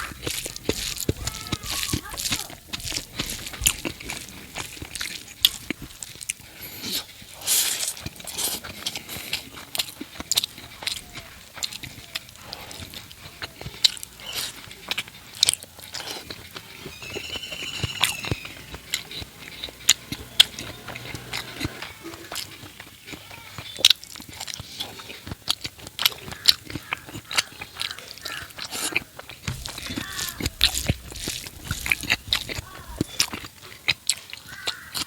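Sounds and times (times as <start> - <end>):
high arching call: 0.0 - 3.5, 16.7 - 22.4, 28.0 - 33.4
chewing with wet mouth smacks: 0.0 - 35.0.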